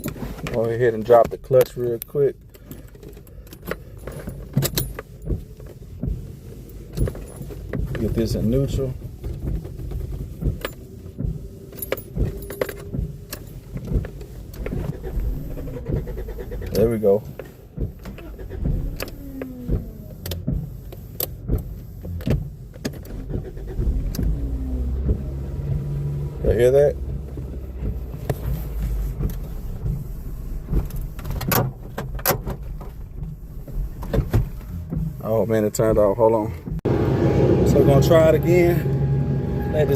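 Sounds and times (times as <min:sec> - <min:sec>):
keys jangling: 0:02.4 - 0:05.3, 0:06.7 - 0:07.7, 0:11.6 - 0:14.8
clicks at car controls: 0:06.9 - 0:30.1.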